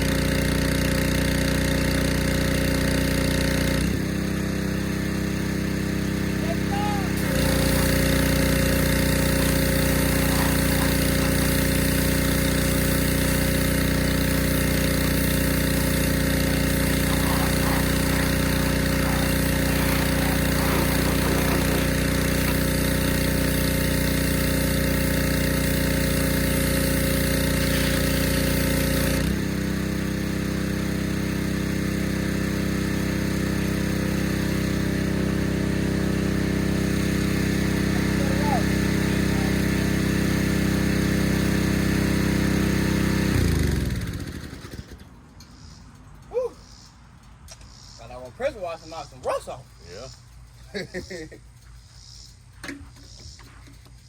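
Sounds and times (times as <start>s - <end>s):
pressure washer motor running: 0.0s - 45.0s
water spray hissing: 7.0s - 24.2s, 27.1s - 28.7s.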